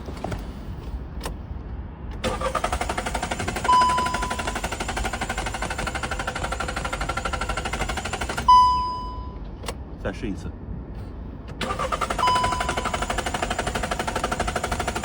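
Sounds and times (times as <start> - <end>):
starter motor cranking engine: 2.2 - 8.8, 11.5 - 15.0
short electronic beep: 3.6 - 4.6, 8.5 - 9.4, 12.2 - 13.0.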